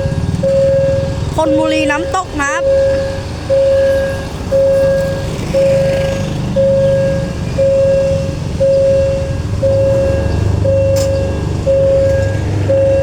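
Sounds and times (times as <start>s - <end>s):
electronic warning beeper: 0.0s - 13.0s
idling locomotive rumble: 0.0s - 13.0s.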